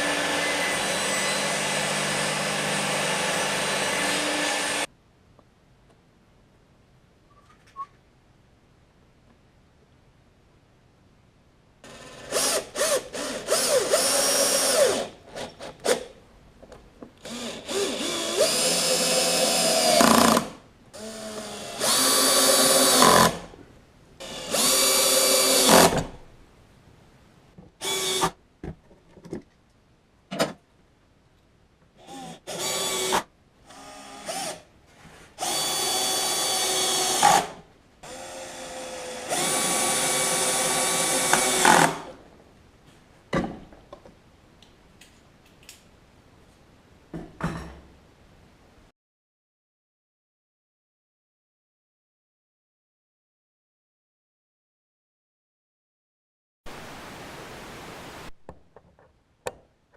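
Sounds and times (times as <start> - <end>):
power drill motor whine: 0.0 - 4.9, 21.0 - 23.3.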